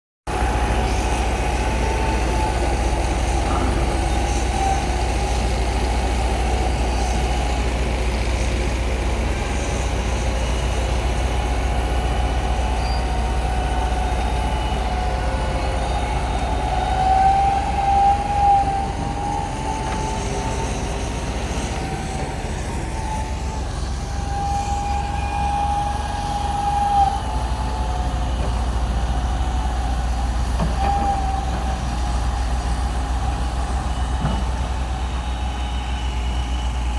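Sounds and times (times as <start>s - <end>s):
high-pitched squeal: 0.3s - 28.4s, 29.2s - 36.9s
bulldozer diesel engine running: 0.3s - 36.9s.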